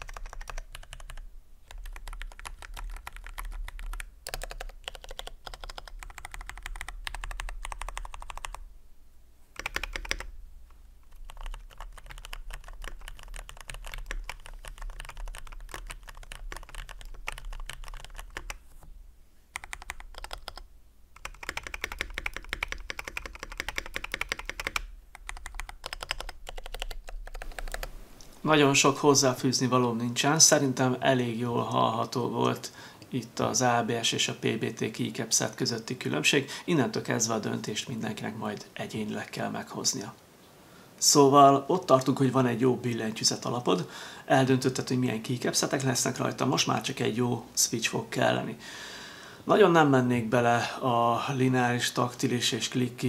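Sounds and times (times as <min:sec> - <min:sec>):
mechanical keyboard typing: 0:00.0 - 0:08.6, 0:09.6 - 0:10.3, 0:11.0 - 0:18.6, 0:19.6 - 0:20.6, 0:21.2 - 0:27.9.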